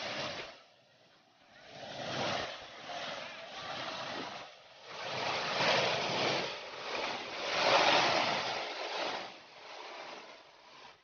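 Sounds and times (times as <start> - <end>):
waterfall rushing and splashing: 2.5 - 10.1.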